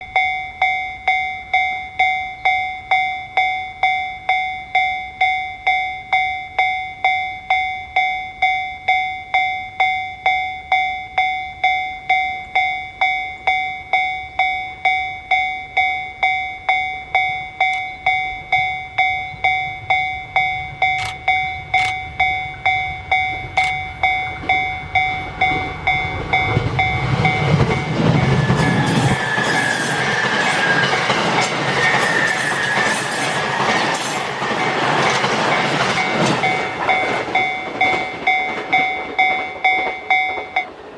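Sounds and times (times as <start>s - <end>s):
level crossing warning bell ringing: 0.0s - 40.9s
train rumble: 17.0s - 40.9s.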